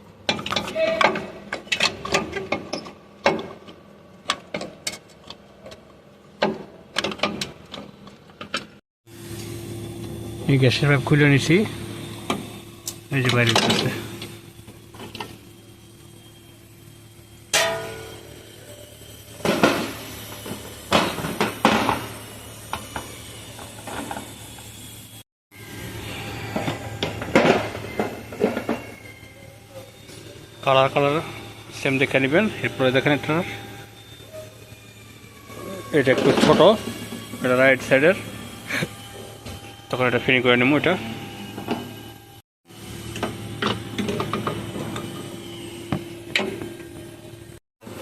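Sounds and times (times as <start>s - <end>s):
metal tools clanking and knocking: 0.3s - 5.8s
hand tools clanking on metal: 17.5s - 18.1s.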